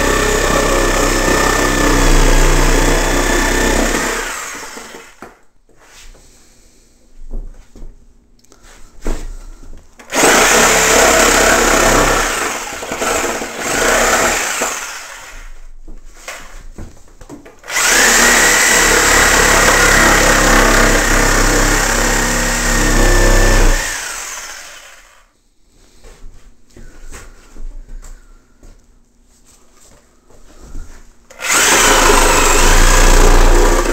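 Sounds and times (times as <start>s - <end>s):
power saw cutting plywood: 0.0s - 5.1s, 10.1s - 15.5s, 17.7s - 25.1s, 31.3s - 33.9s.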